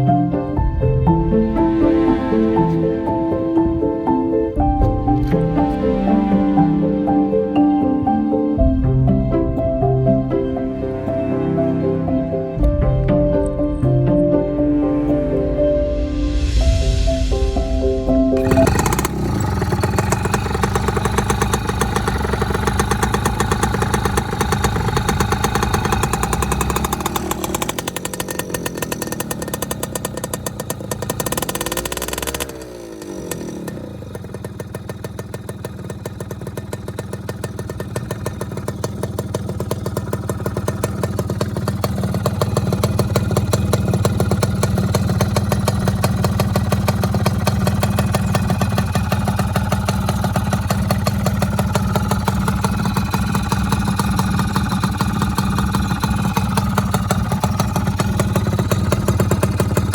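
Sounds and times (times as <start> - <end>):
two-stroke engine revving and idling: 18.4 - 59.9.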